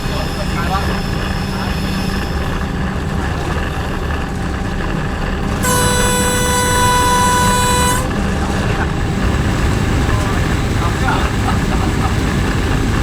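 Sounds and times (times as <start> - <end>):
locomotive engine rumbling: 0.0 - 13.0
locomotive horn: 5.5 - 9.3.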